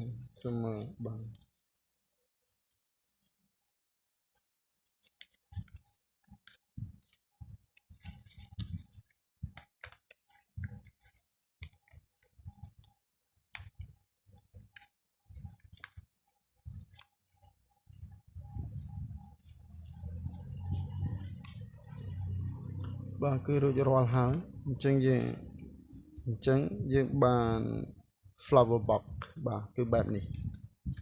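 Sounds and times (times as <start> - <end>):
paper crinkling and rustling: 0.1 - 3.5, 4.3 - 22.4.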